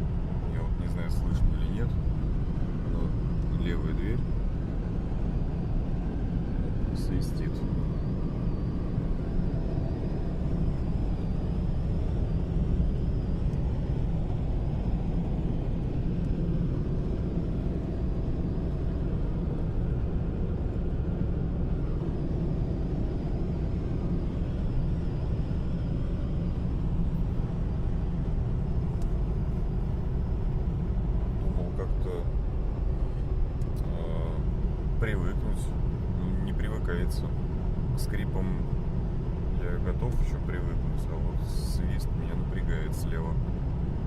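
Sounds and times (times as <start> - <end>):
car road and engine noise: 0.0 - 44.0.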